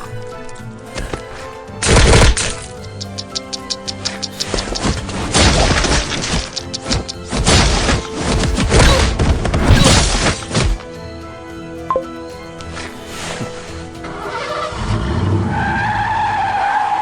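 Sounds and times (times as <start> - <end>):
dramatic background music: 0.0 - 16.3
smashes and heavy blows: 4.8 - 10.9.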